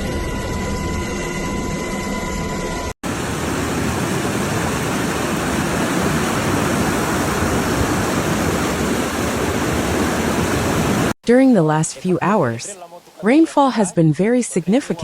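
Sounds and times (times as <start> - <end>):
floodwater rushing: 3.1 - 13.9.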